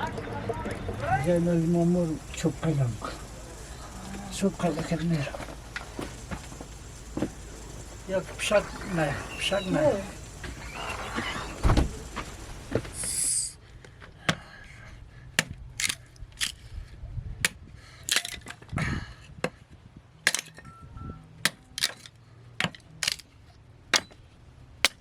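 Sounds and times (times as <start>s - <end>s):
short hiss: 2.0s - 13.6s.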